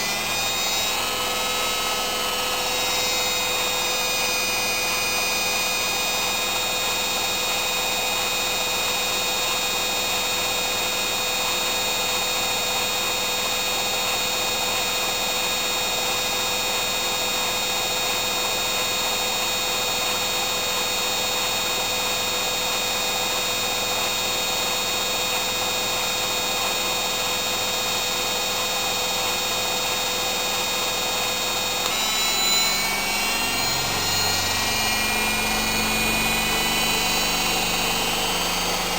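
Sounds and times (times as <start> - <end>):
washing machine spinning: 0.0 - 8.2, 32.0 - 38.9.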